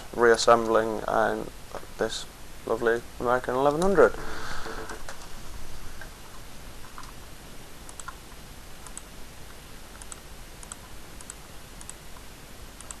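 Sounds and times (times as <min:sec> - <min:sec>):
steady hiss: 0:00.0 - 0:13.0
faint small clicks: 0:07.9 - 0:13.0.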